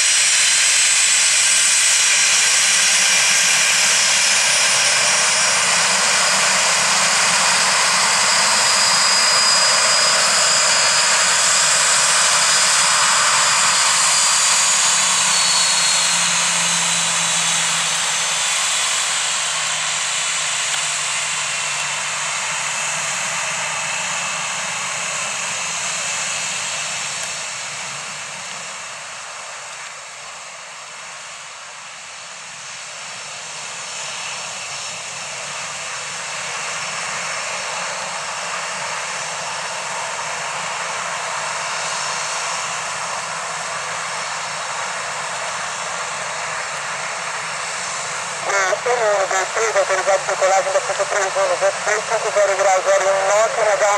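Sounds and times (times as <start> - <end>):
jet engines whining and rushing: 0.0 - 53.9.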